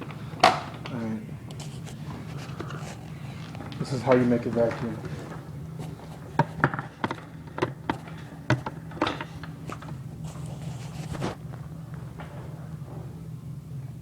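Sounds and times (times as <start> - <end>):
steady low hum: 0.0 - 14.0
plastic parts knocking together: 6.4 - 10.0.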